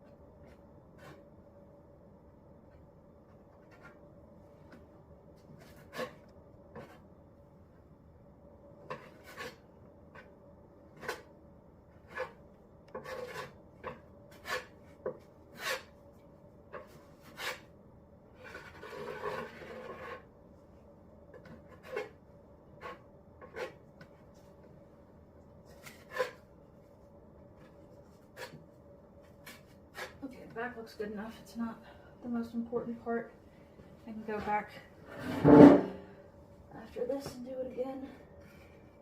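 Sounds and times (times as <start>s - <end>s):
putty knife scraping: 5.5s - 7.0s, 8.9s - 10.3s, 10.9s - 11.3s, 12.0s - 16.0s, 16.7s - 17.7s, 18.4s - 20.3s, 21.4s - 22.2s, 22.8s - 24.1s, 25.7s - 26.4s, 27.6s - 28.6s, 29.4s - 30.2s.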